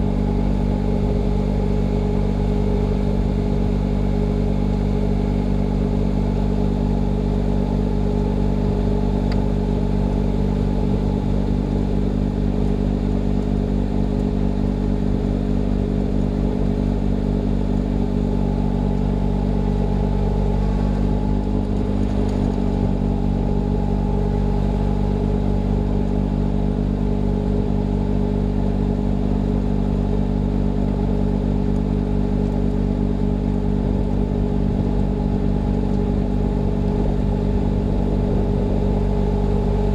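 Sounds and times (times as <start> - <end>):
tractor diesel engine droning: 33.2 - 39.9.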